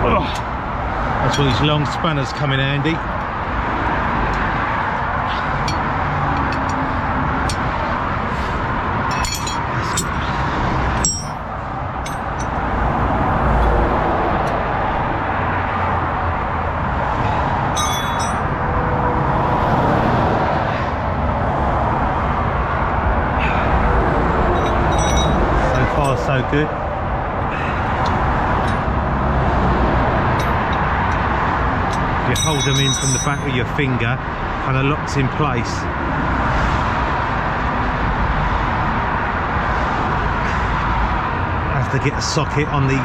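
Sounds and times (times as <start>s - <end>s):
traffic noise: 0.0s - 43.0s
metallic clinks of spanners on bolts: 5.6s - 6.9s, 9.1s - 11.4s, 12.0s - 12.6s, 17.8s - 18.5s, 24.6s - 26.3s, 28.0s - 28.9s, 30.4s - 31.3s, 31.9s - 33.6s.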